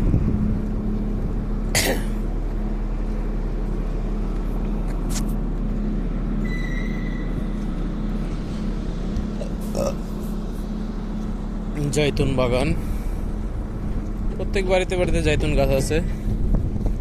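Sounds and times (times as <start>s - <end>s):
vehicle rumble: 0.0s - 17.0s
short high beep: 6.4s - 7.4s.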